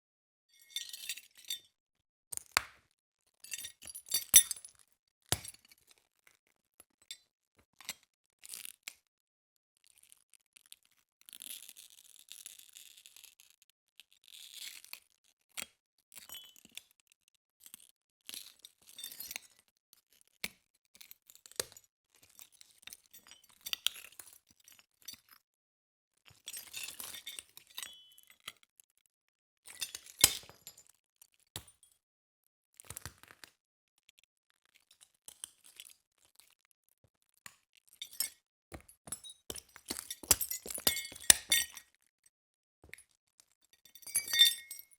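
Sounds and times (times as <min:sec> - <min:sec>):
glass shards crunching: 0:39.8 - 0:41.8.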